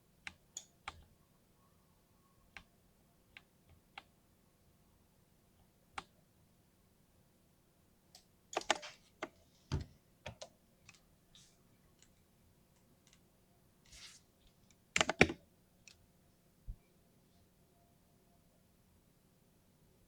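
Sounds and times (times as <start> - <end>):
mechanical keyboard keystrokes: 8.6 - 8.9, 15.0 - 15.4.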